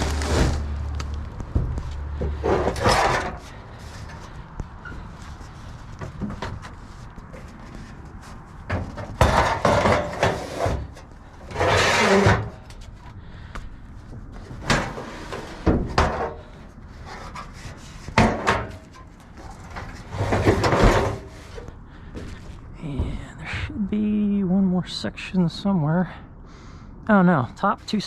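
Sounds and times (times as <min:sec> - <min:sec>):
debris scraping in a dumpster: 0:00.0 - 0:01.0, 0:02.1 - 0:04.3, 0:08.7 - 0:12.7, 0:14.6 - 0:21.7.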